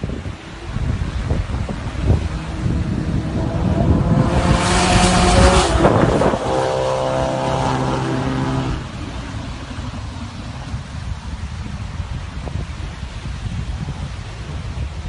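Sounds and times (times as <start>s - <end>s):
loud rushing noise: 0.0s - 14.6s
engine at steady revs: 0.4s - 11.2s.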